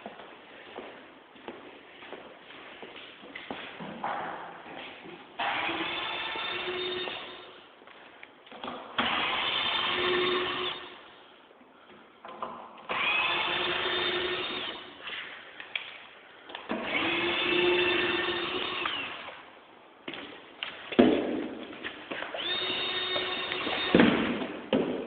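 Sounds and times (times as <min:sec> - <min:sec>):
power drill running: 0:05.4 - 0:07.5, 0:09.0 - 0:11.0, 0:12.9 - 0:15.0, 0:16.7 - 0:19.4, 0:22.3 - 0:24.0.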